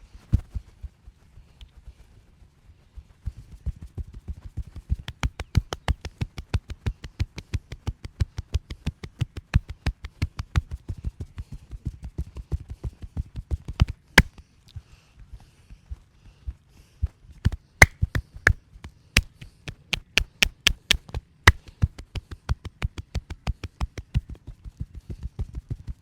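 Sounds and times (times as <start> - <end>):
hands striking the body: 5.1 - 7.7, 17.5 - 18.6, 19.2 - 24.2.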